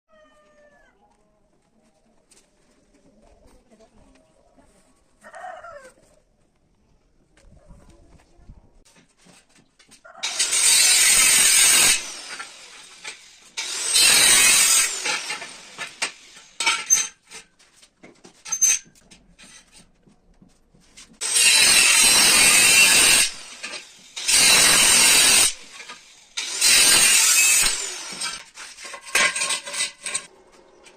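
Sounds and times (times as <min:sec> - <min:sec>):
power tool working metal: 0:10.2 - 0:17.2, 0:21.2 - 0:30.3.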